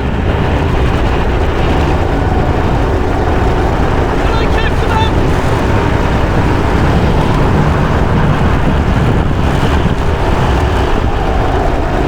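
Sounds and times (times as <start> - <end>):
vehicle engine rumbling: 0.0 - 12.0.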